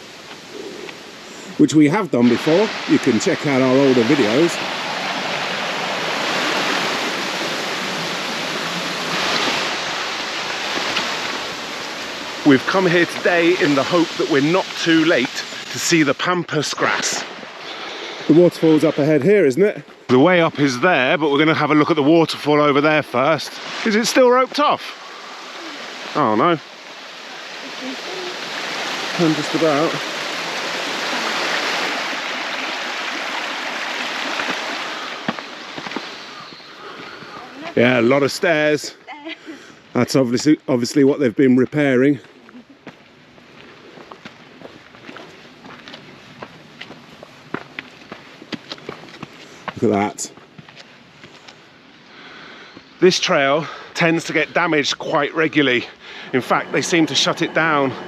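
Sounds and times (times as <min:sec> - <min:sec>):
stream rushing over rocks: 0:00.0 - 0:39.1, 0:53.0 - 0:58.0.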